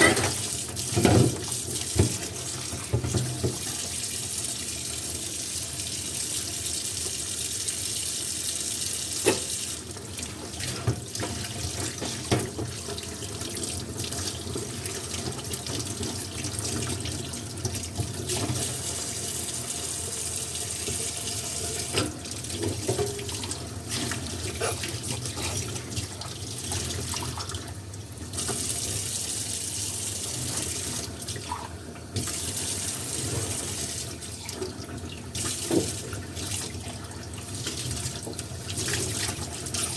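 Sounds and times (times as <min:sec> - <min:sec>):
dishes clinking and knocking: 0:00.0 - 0:00.4
tap water running into sink: 0:00.0 - 0:39.9.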